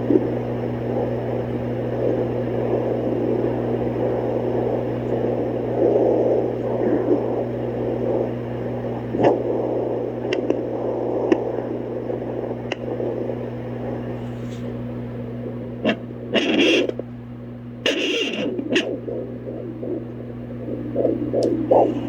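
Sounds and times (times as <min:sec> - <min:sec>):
electrical hum: 0:00.0 - 0:22.0
whooshing static: 0:00.0 - 0:22.0.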